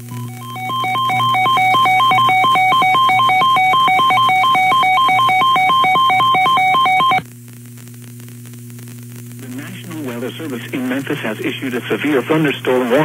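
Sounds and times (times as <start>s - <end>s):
buzzy two-pitch alert tone: 0.2s - 7.2s.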